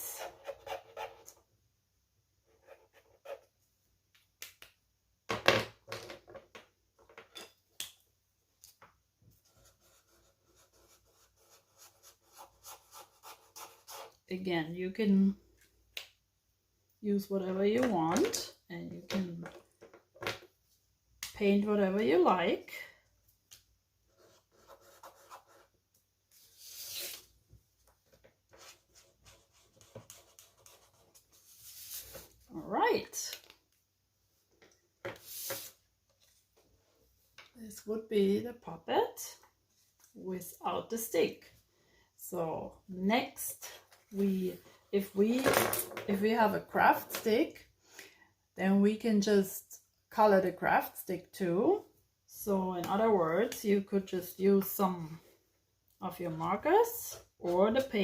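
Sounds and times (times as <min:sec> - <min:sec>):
marker scratching strokes: 0:28.6 - 0:32.2.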